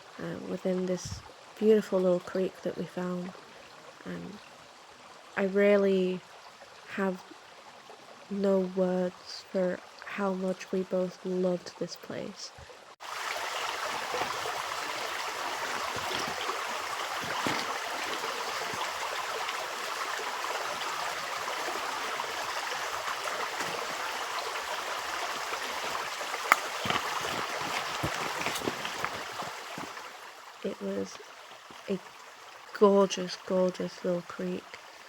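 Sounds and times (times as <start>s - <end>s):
creek babbling over stones: 0.0s - 35.0s.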